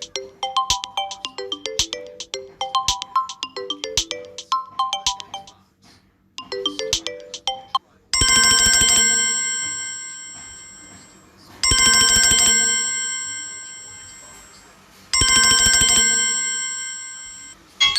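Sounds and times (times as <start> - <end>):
ringtone of plucked notes: 0.0 - 5.6, 6.4 - 11.0, 15.2 - 17.9
bell-like chime: 9.2 - 14.6, 15.2 - 17.9.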